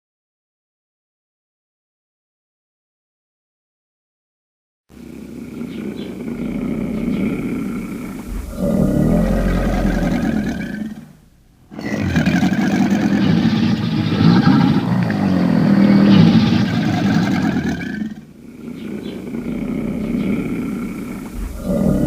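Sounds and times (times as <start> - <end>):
deep rough dragon roars: 5.0 - 22.0.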